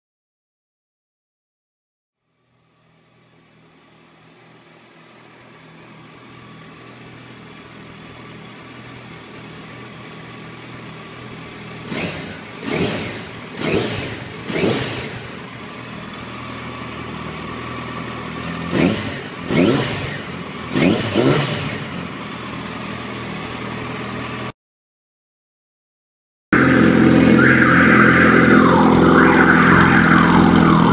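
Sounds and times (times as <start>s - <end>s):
motorcycle engine idling and revving: 2.2s - 24.6s, 26.5s - 30.9s.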